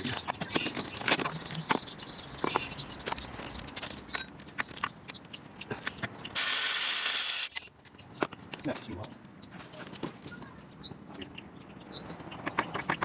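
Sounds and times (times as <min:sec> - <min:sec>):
loud steady hiss: 0:06.4 - 0:07.5.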